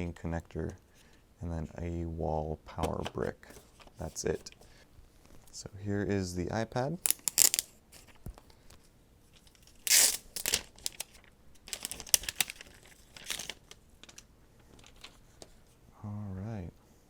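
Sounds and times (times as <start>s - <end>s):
plastic packaging crinkling and tearing: 7.1s - 8.2s, 9.4s - 15.2s.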